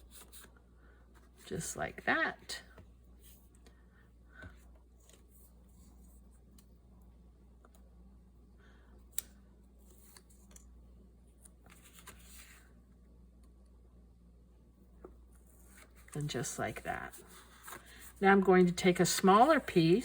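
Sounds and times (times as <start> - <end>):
paper rustle: 11.4 - 12.7, 15.4 - 20.0.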